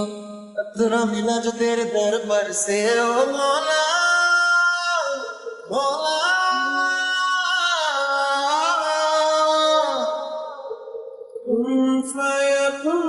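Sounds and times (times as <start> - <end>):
man singing devotional song: 0.0 - 13.0.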